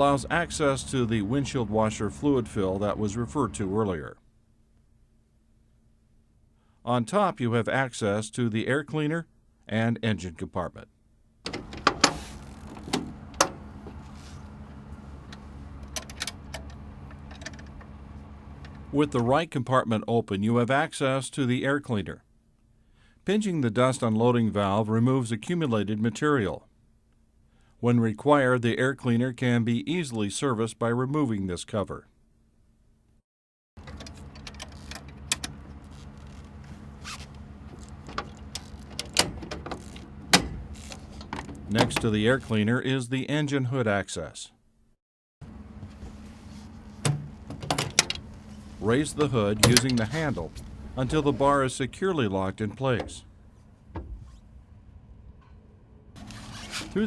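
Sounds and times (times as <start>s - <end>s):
low steady hum: 0.0s - 27.7s, 44.6s - 57.0s
metal door latch clicking: 11.5s - 13.7s
cover scrapes and clicks: 56.2s - 57.0s.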